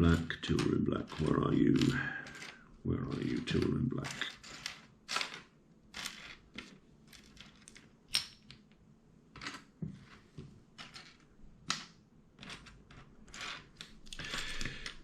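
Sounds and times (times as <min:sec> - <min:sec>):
plastic toy bricks rattling: 0:00.0 - 0:08.3, 0:10.8 - 0:11.3.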